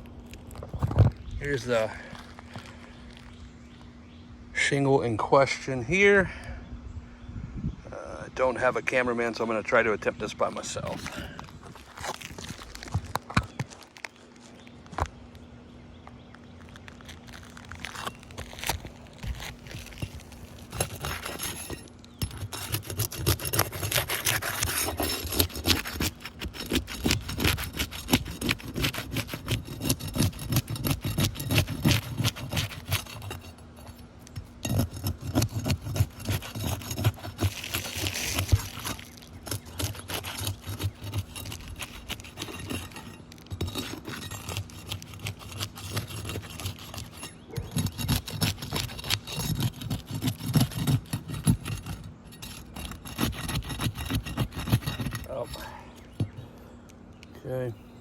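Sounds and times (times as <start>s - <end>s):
scraping on roof shingle: 9.3s - 15.0s, 16.6s - 56.4s.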